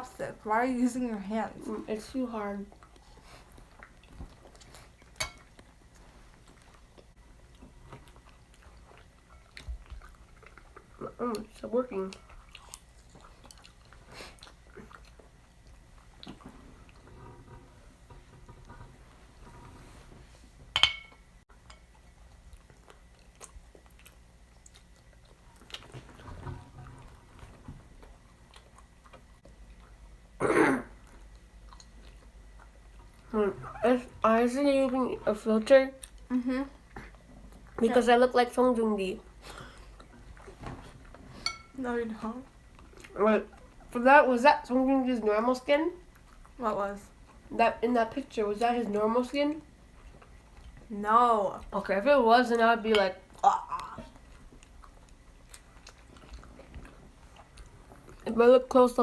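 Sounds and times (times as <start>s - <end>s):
people chewing: 1.6s - 20.4s, 21.5s - 44.0s, 46.0s - 51.8s, 52.5s - 59.0s
tableware clink: 20.8s - 21.2s.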